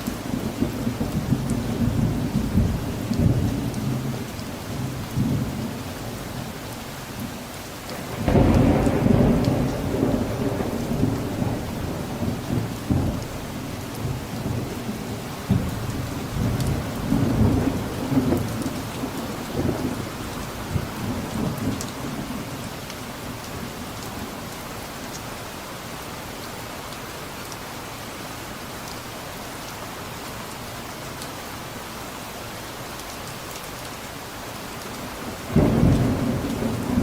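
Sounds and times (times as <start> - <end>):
steady rain: 0.0 - 37.0
thunder rumbling: 0.2 - 4.2, 7.9 - 24.3, 35.2 - 37.0.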